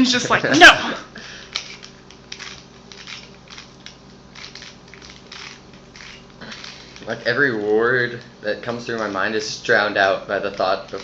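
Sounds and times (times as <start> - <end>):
puzzle cube plastic clicks: 1.5 - 7.0.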